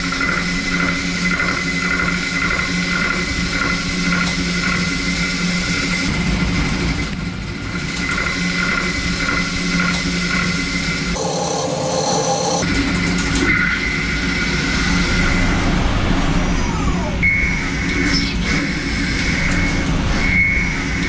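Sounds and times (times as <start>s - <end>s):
lathe machine hum and whine: 11.1s - 12.7s.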